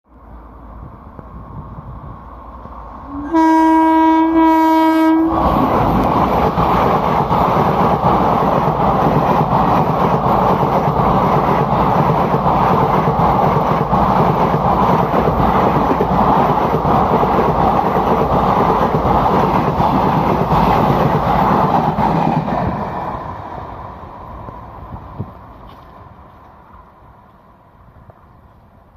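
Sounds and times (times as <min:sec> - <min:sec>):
train wheels rushing on rails: 0:00.5 - 0:28.9
locomotive horn blast: 0:03.1 - 0:05.5.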